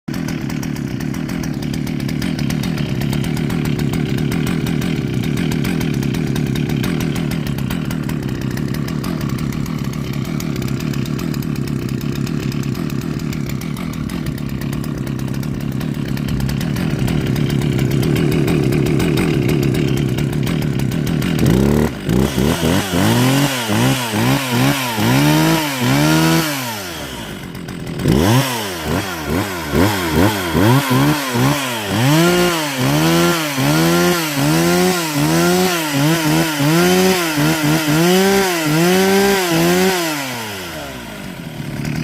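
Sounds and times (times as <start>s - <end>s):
chainsaw engine running: 0.1s - 42.0s.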